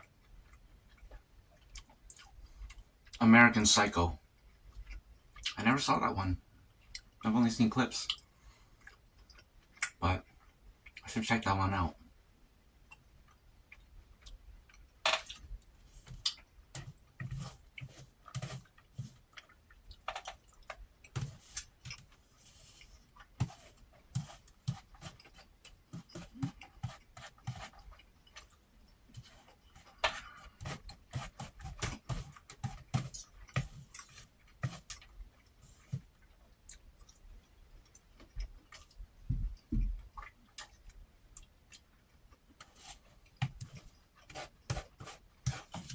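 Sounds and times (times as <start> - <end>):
chewing and mouth smacking: 0.0 - 3.2, 12.9 - 44.6
low thuds: 39.2 - 40.0.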